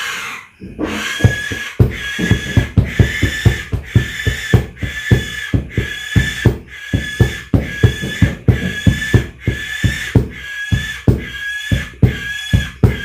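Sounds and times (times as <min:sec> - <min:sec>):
low drum thumps: 0:00.6 - 0:13.0.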